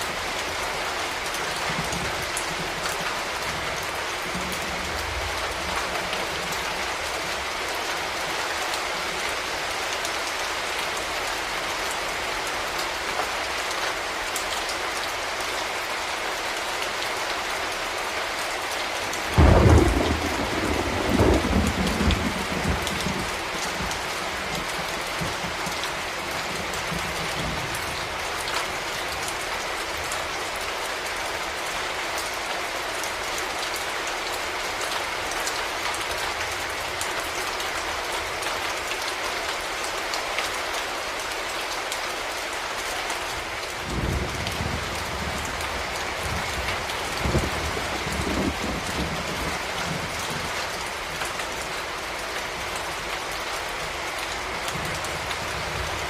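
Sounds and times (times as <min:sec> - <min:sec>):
steady rain falling: 0:00.0 - 0:56.0
thunder clap rumbling: 0:19.4 - 0:25.7, 0:43.9 - 0:50.5.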